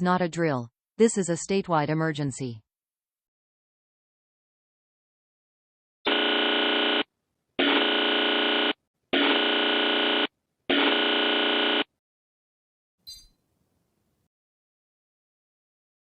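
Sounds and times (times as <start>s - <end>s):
harsh electronic alert buzzes: 6.1s - 11.9s.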